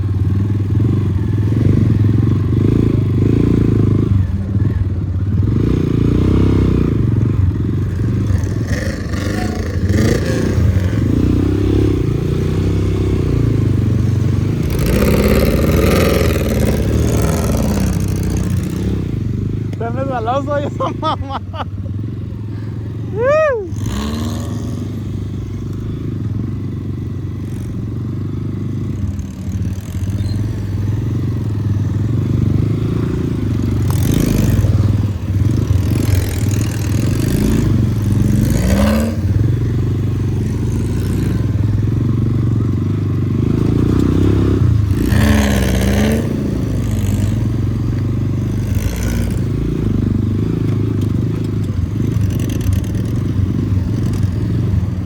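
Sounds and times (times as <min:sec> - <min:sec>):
off-road vehicle engine running: 0:00.0 - 0:55.0
vehicle clattering and scraping: 0:43.4 - 0:54.9.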